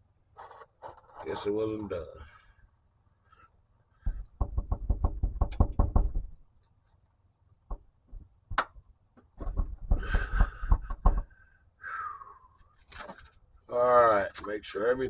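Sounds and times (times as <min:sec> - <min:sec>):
fast sharp knocks: 0:04.0 - 0:06.4, 0:07.7 - 0:11.4.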